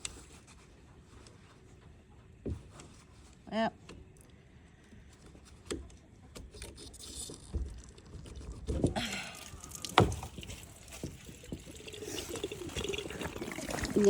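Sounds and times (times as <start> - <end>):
hose clunks and rustling: 6.9 - 14.0
water running out: 7.2 - 14.0.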